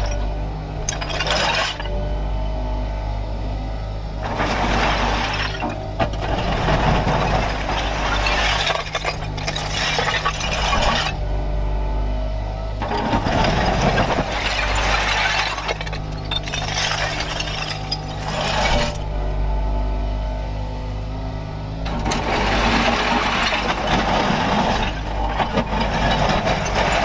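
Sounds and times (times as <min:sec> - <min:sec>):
diesel engine running: 0:00.0 - 0:27.0
hydraulics rushing and clattering: 0:04.2 - 0:11.2, 0:12.8 - 0:19.0, 0:21.8 - 0:27.0.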